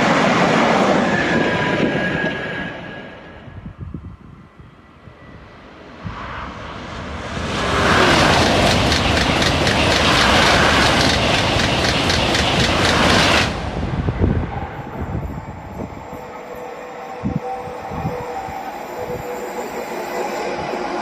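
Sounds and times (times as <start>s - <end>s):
high-speed train passing: 0.0s - 21.0s
train rumble: 5.3s - 21.0s
train wheels clicking: 7.6s - 13.8s.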